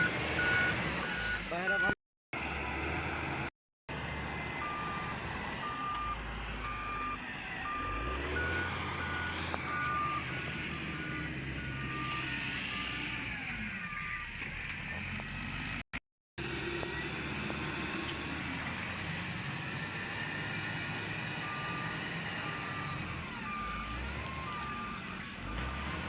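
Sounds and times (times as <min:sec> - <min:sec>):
reversing alarm beeps: 0:00.0 - 0:02.0, 0:04.6 - 0:13.2, 0:21.4 - 0:26.0
diesel engine running: 0:00.0 - 0:15.8, 0:16.4 - 0:26.0.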